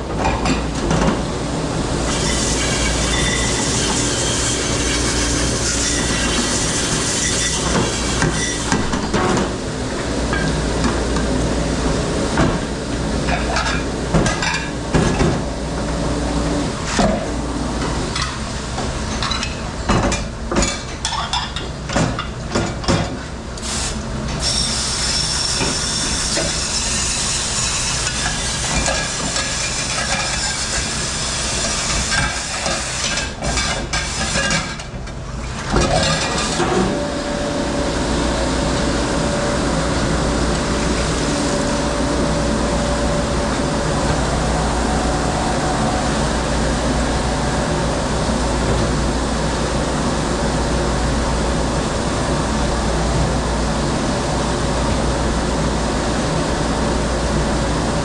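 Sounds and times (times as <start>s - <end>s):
machine hum: 0.0s - 19.1s, 36.4s - 58.0s.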